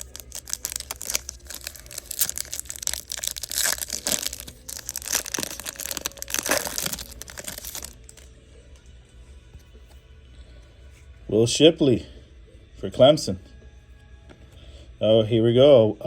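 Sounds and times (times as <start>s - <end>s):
cards being flipped through: 0.0s - 8.3s
foil wrapper crinkling: 0.0s - 8.3s.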